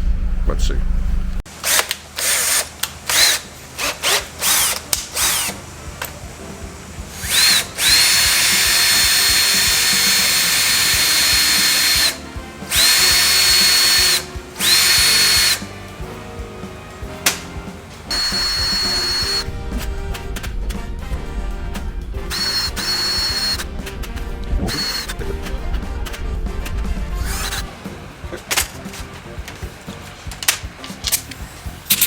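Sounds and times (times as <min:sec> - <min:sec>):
electric drill whining: 0:01.5 - 0:16.1, 0:17.2 - 0:20.9, 0:21.9 - 0:26.2, 0:27.2 - 0:28.0.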